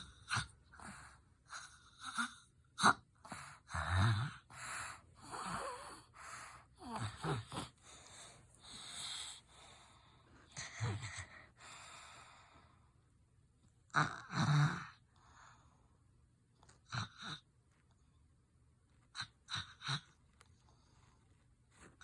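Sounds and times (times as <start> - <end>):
child snoring: 0.0 - 7.8, 13.9 - 15.0.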